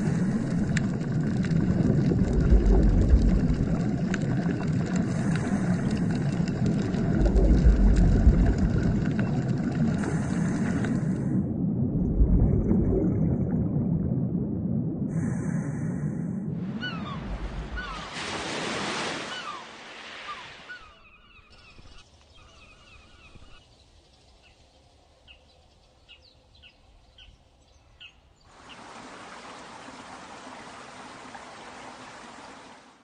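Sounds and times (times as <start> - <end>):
rushing water-like noise: 0.0 - 11.3, 16.6 - 20.8, 28.5 - 33.0.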